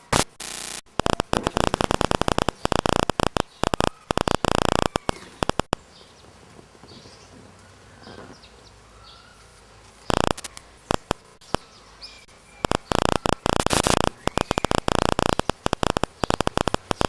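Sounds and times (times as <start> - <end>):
loud crackling bursts: 0.0 - 5.8, 10.1 - 17.0
faint bird chirps: 1.6 - 6.2, 6.9 - 17.0.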